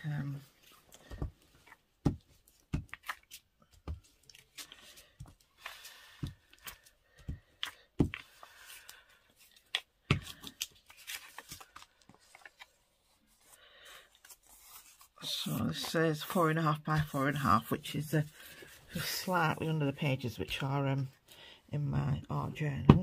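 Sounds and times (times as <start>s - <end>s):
paper rustling: 0.6s - 17.5s.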